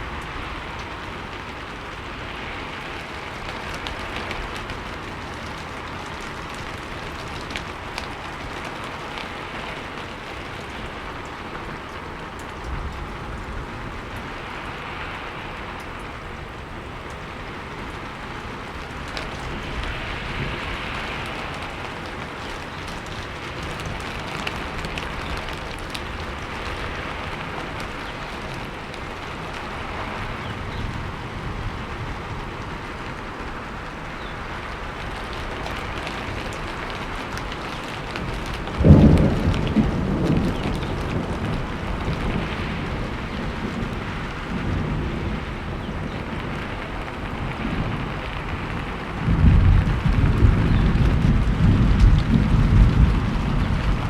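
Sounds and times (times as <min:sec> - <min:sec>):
steady rain falling: 0:00.0 - 0:54.0
loud thunder clap: 0:38.2 - 0:54.0.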